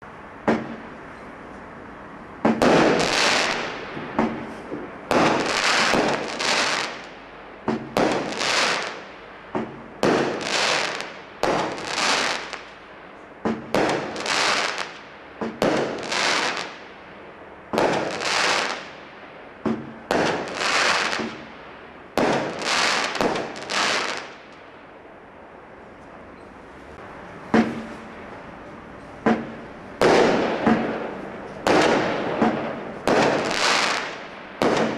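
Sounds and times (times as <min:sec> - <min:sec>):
firework shots with hissing: 0:02.4 - 0:12.8, 0:13.4 - 0:16.9, 0:17.7 - 0:19.0, 0:19.6 - 0:24.6, 0:27.5 - 0:28.1, 0:29.2 - 0:34.9.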